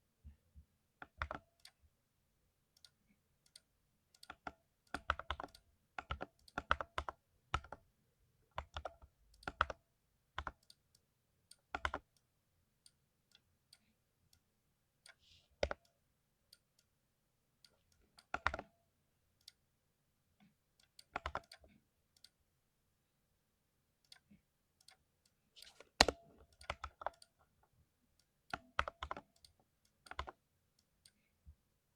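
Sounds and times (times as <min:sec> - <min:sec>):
keyboard typing: 0:01.0 - 0:01.8, 0:04.2 - 0:07.8, 0:08.5 - 0:09.8, 0:10.4 - 0:10.7, 0:11.6 - 0:12.1, 0:15.1 - 0:15.9, 0:18.1 - 0:18.7, 0:20.8 - 0:22.3, 0:25.6 - 0:27.6, 0:28.5 - 0:30.4.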